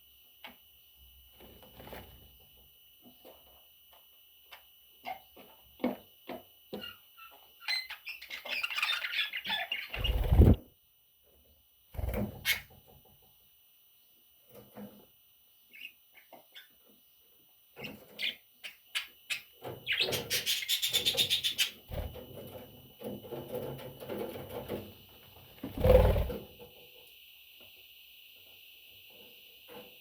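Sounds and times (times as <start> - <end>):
budgie chicks chirping: 17.8 - 21.9.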